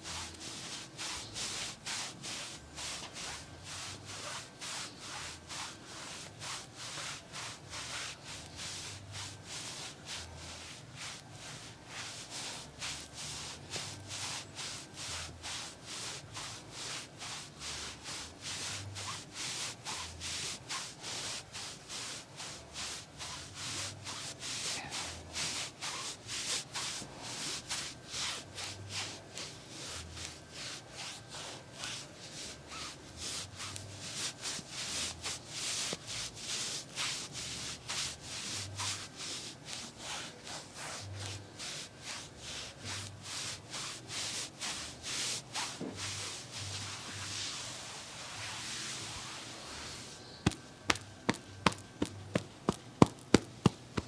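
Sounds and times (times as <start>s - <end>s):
hands rubbing massage strokes: 0.0s - 54.0s.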